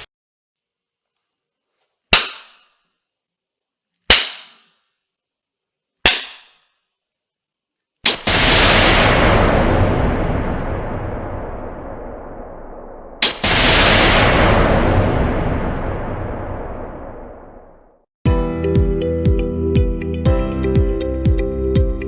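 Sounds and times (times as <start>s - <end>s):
whip cracks: 4.1s - 4.6s, 6.1s - 6.5s, 8.1s - 9.2s, 13.2s - 14.4s
loud rushing noise: 8.1s - 17.8s.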